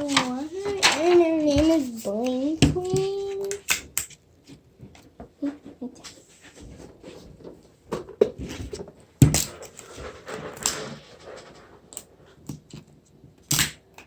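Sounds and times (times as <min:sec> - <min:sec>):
plastic and paper crinkling: 0:00.0 - 0:03.7, 0:05.0 - 0:12.4.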